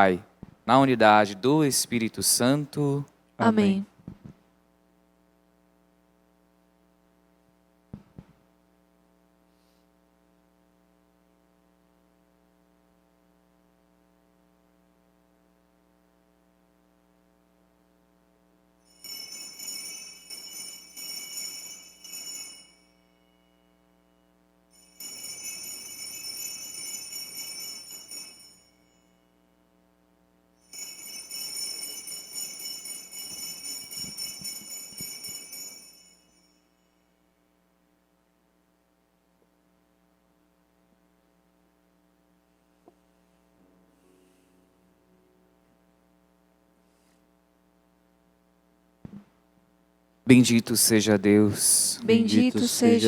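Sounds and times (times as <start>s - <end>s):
low electrical hum: 0.0s - 53.0s
small hand bells jingling: 30.8s - 36.5s.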